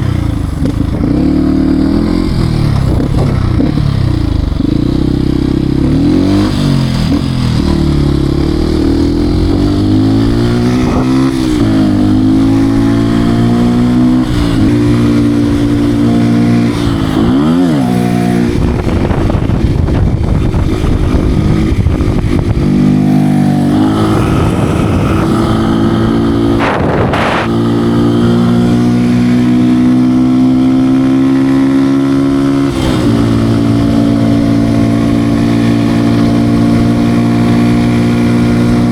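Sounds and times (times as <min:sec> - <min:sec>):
wind on microphone: 0:00.0 - 0:05.0, 0:08.7 - 0:38.9
motorcycle engine revving: 0:00.0 - 0:38.9.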